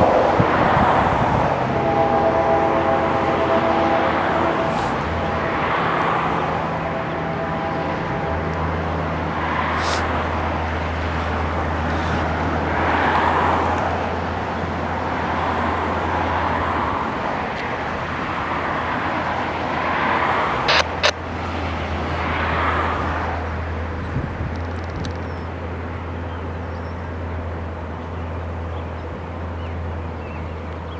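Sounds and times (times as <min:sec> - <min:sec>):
vehicle rumble with low hum: 0:00.0 - 0:30.9
sharp clicks: 0:20.7 - 0:21.2.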